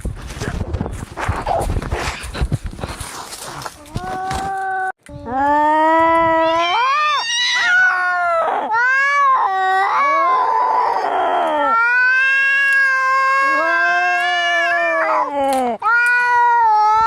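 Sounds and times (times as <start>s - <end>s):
cats yowling in a fight: 6.3s - 17.0s.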